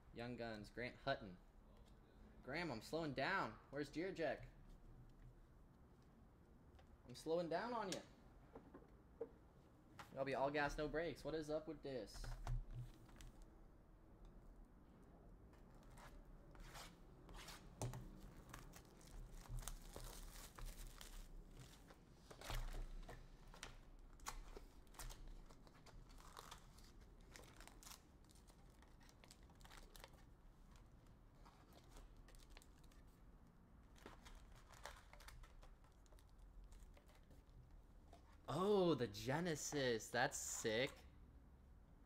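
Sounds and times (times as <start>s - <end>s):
foil wrappers crinkling and tearing: 18.4s - 21.9s, 24.1s - 30.2s.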